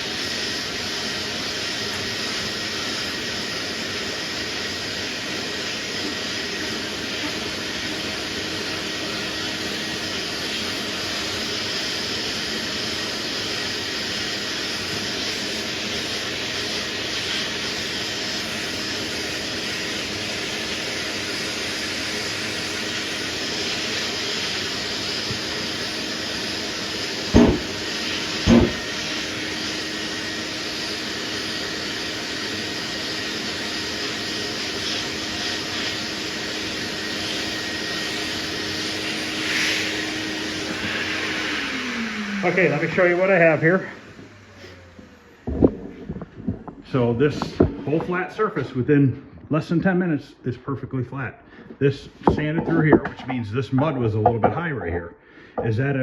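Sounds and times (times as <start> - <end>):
loud knocks: 27.3 - 27.8, 28.4 - 28.8.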